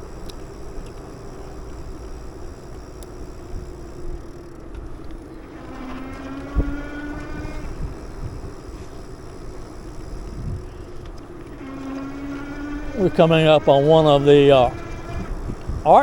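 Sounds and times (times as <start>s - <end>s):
bicycle rolling rumble: 0.0s - 16.0s
pitched humming tone: 0.0s - 16.0s
steady low hum: 0.0s - 16.0s
wind on microphone: 10.0s - 11.0s, 14.0s - 16.0s.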